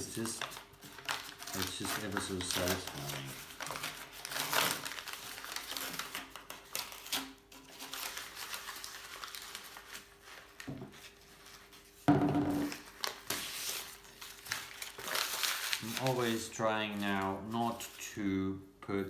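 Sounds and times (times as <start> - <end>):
tape and paper peeled and crumpled: 0.0 - 12.0, 12.6 - 18.2.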